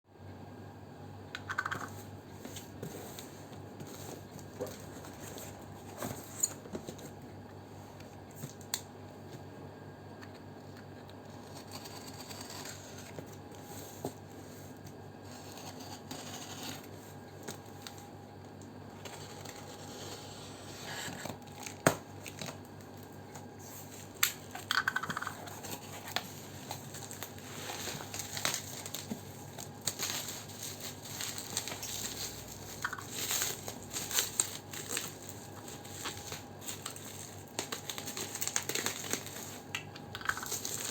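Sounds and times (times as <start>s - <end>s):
packaging rustling and tearing: 11.2s - 18.1s, 18.9s - 40.9s.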